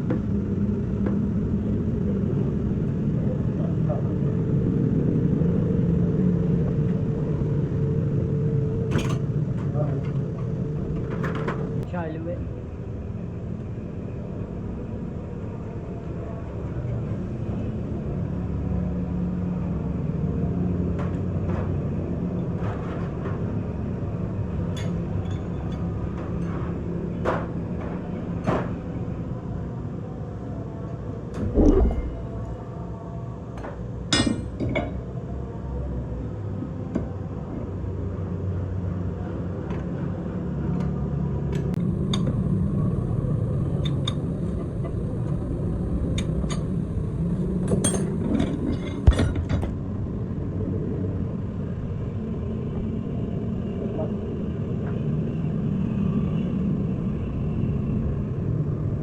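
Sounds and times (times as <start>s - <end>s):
loud knocks: 31.4s - 32.3s.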